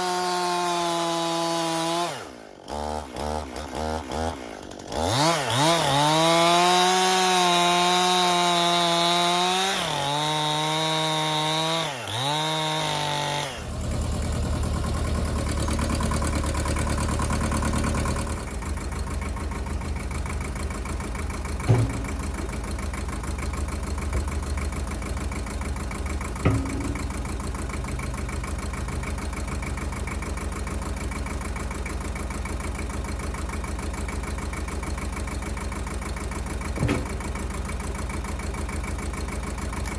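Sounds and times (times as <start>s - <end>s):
chainsaw running at high revs: 0.0s - 22.6s
engine idling: 13.6s - 39.9s
sharp knocks: 21.6s - 24.5s, 26.2s - 28.9s, 36.8s - 37.4s.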